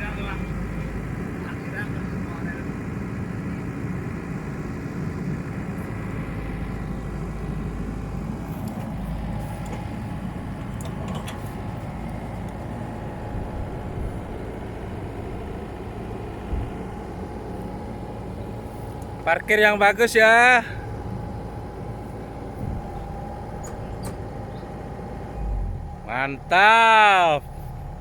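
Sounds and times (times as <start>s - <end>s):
excavator diesel engine running: 0.0s - 28.0s.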